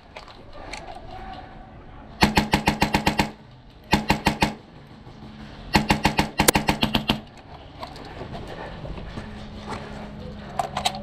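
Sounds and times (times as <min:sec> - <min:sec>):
airsoft rifle full-auto bursts: 0:02.2 - 0:04.6.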